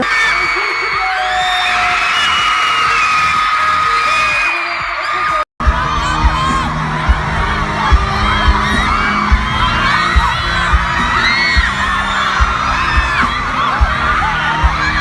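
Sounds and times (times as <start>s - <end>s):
crowd screaming and cheering: 0.0s - 15.0s
music with thumping bass beat: 5.6s - 15.0s.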